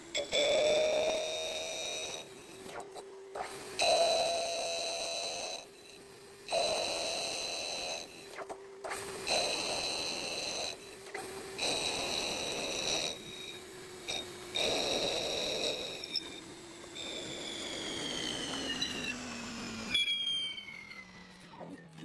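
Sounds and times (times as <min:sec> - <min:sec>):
cnc machine high-pitched whine: 0:00.0 - 0:22.0.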